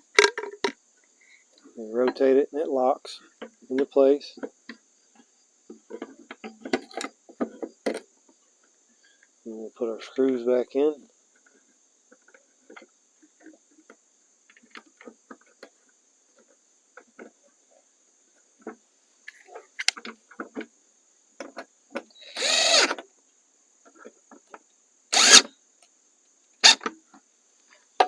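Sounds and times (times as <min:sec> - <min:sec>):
power driver whirring: 0:22.2 - 0:23.0, 0:25.1 - 0:25.5.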